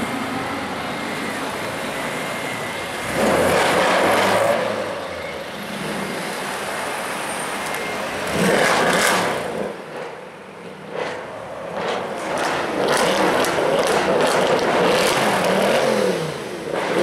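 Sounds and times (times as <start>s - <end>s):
car accelerating hard: 3.0s - 5.0s, 8.2s - 9.8s, 10.9s - 17.0s.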